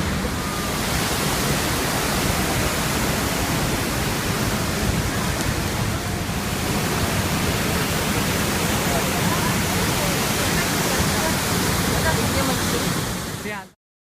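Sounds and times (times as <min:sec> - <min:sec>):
waterfall roaring: 0:00.0 - 0:13.8.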